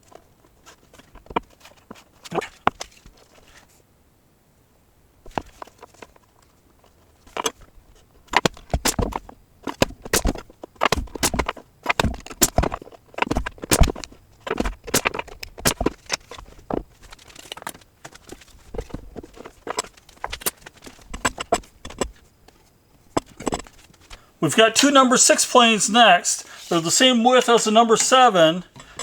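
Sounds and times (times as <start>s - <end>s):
hard objects knocking on wood: 8.3s - 17.0s.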